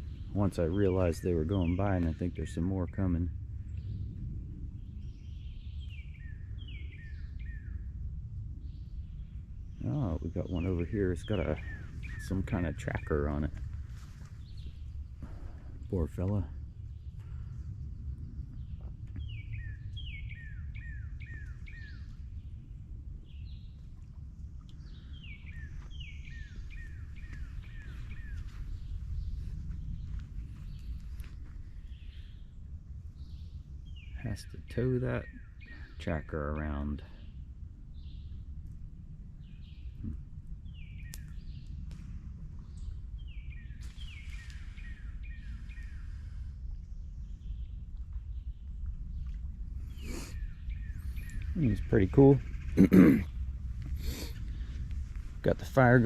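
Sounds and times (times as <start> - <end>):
steady low rumble: 0.0 - 56.0.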